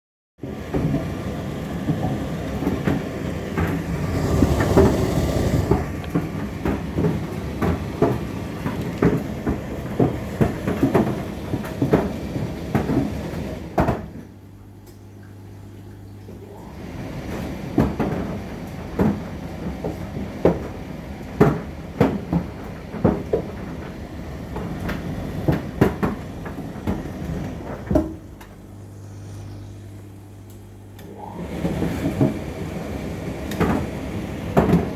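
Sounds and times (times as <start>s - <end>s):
tumble dryer laundry tumbling: 0.4s - 14.4s, 16.4s - 34.9s
dryer low hum: 0.4s - 34.9s.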